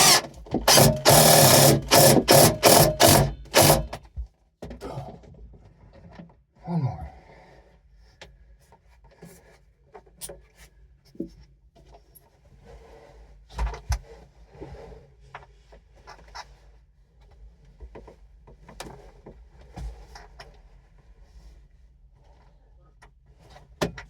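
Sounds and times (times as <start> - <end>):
loud thumps: 0.0 - 4.0.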